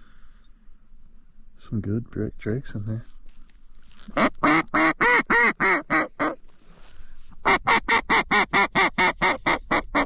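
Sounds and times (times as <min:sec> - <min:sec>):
duck call quacking: 0:04.1 - 0:06.4, 0:07.4 - 0:10.0.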